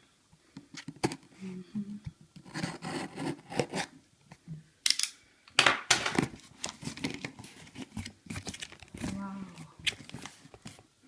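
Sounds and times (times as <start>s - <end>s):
packaging tearing and crinkling: 6.6s - 9.2s.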